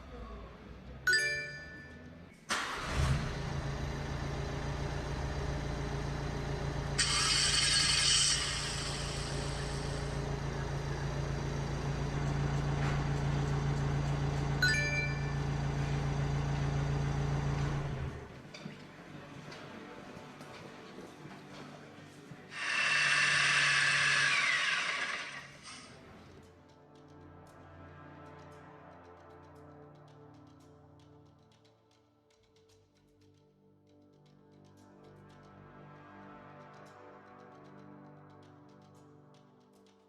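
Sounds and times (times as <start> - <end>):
van engine idling: 2.5 - 7.2, 8.5 - 18.3
loud hiss: 7.0 - 10.2, 22.5 - 25.9.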